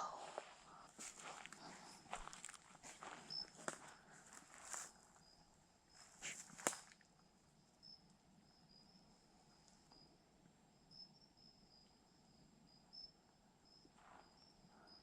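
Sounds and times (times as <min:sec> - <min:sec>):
insects chirping: 0:00.0 - 0:15.0
footsteps crunching on dry leaves: 0:00.4 - 0:04.9, 0:06.1 - 0:06.9
twig snapping: 0:06.5 - 0:07.0.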